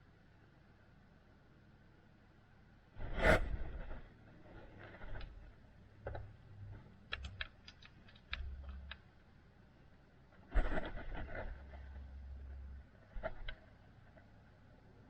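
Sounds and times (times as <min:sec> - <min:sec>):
light irregular clicks and taps: 0:06.0 - 0:09.1
scraping rustle: 0:10.5 - 0:12.1.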